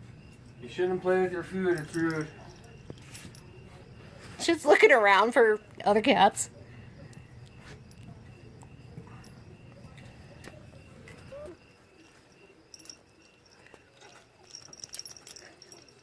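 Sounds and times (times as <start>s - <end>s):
faint insects chirping: 0.0s - 16.0s
small clicks and rustles: 7.1s - 16.0s.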